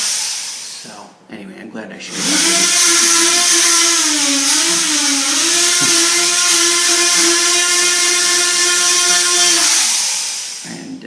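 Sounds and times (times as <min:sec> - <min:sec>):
power tool high whine: 0:02.1 - 0:10.7.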